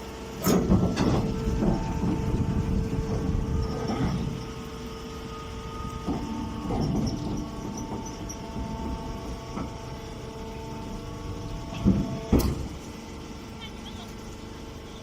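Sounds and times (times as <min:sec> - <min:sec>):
baling machine humming: 0:00.0 - 0:15.0
short mechanical knocks: 0:00.4 - 0:04.5, 0:11.6 - 0:12.9.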